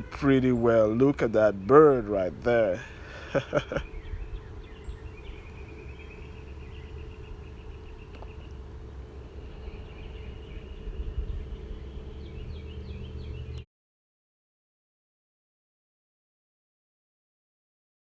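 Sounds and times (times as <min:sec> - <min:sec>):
bird chirping: 0:00.0 - 0:13.6
wind rumbling on microphone: 0:03.7 - 0:08.6, 0:09.4 - 0:13.6.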